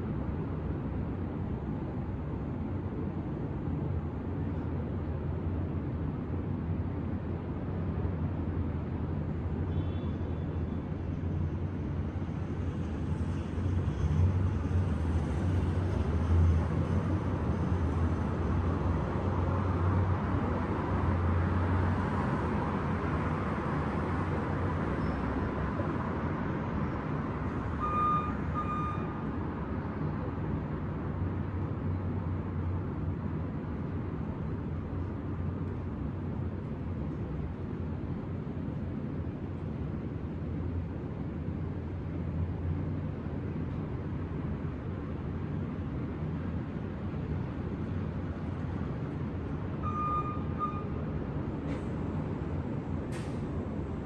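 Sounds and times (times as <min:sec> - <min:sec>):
city street traffic rumble: 0:00.0 - 0:54.0
short beeps: 0:27.8 - 0:29.2, 0:49.8 - 0:51.0.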